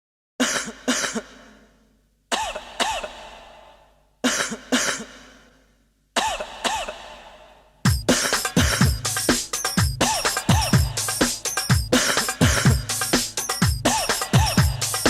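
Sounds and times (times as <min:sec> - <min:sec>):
person coughing: 0:00.4 - 0:01.7, 0:02.3 - 0:03.4, 0:04.2 - 0:05.5, 0:06.2 - 0:07.2, 0:08.6 - 0:09.0, 0:10.0 - 0:11.1, 0:13.9 - 0:14.8
dance track: 0:07.9 - 0:15.0.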